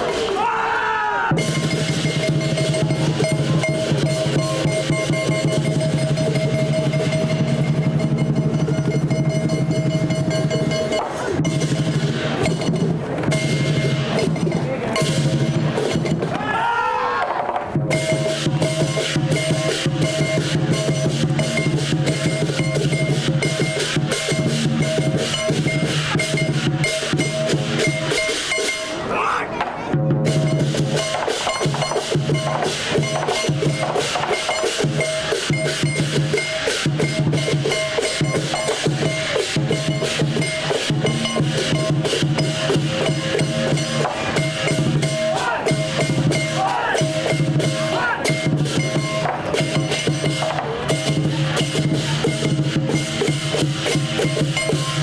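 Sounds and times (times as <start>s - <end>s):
rapid drumbeats: 0.0s - 55.0s
cymbal clashes: 1.4s - 16.3s, 17.9s - 29.1s, 30.3s - 55.0s
gongs ringing: 1.4s - 16.3s, 30.4s - 55.0s.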